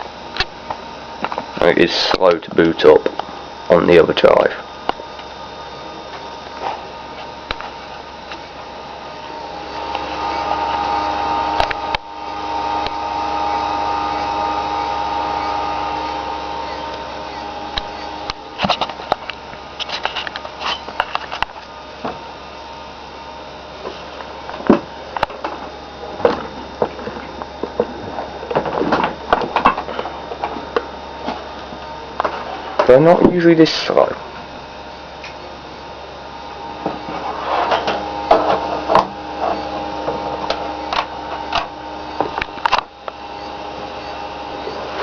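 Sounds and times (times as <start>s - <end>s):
computer fans and hard drives whirring: 0.0s - 45.0s
high steady whine: 0.0s - 45.0s
hard drive squeaks and clicks: 12.8s - 21.5s, 39.4s - 45.0s.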